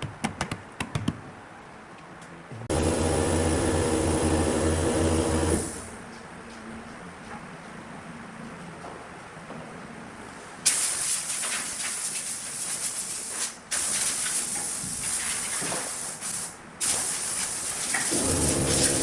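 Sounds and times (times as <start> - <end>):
loud hissing bursts: 10.7 - 15.3, 15.9 - 19.0.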